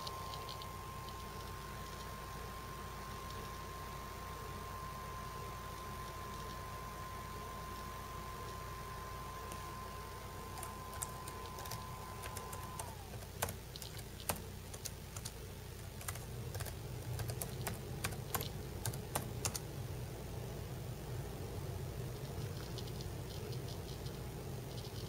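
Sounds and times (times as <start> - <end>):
hard drive seek clicks: 0.0 - 4.1, 5.0 - 19.6
faint steady whine: 0.0 - 25.0
low hum: 0.0 - 25.0.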